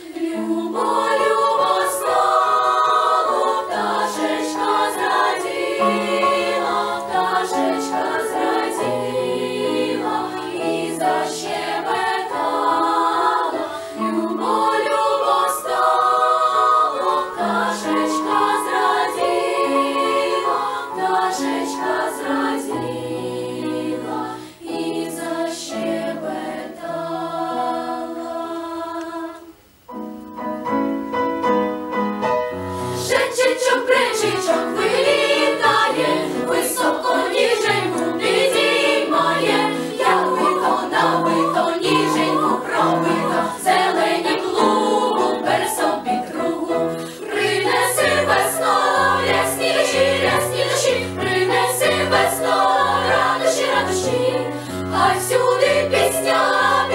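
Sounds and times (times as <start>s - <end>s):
piano accompaniment: 0.0s - 28.2s, 29.4s - 56.9s
children's choir singing: 0.0s - 29.6s, 33.0s - 56.9s.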